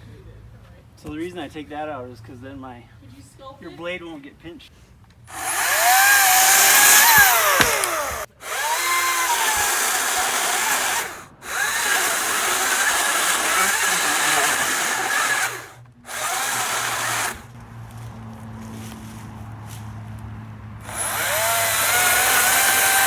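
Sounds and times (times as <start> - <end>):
chainsaw cutting a tree: 5.3 - 17.6, 20.8 - 23.0.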